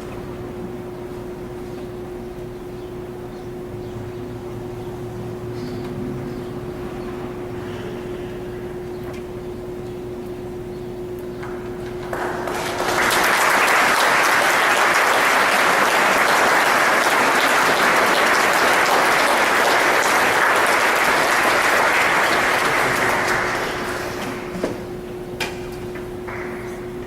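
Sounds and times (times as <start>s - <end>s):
congregation applauding: 12.0s - 24.7s, 26.3s - 26.8s.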